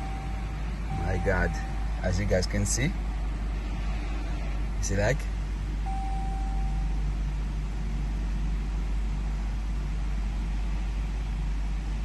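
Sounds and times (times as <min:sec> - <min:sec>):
short electronic beep: 0:00.0 - 0:02.2, 0:05.9 - 0:06.9
car engine rumble in cabin: 0:00.0 - 0:12.0.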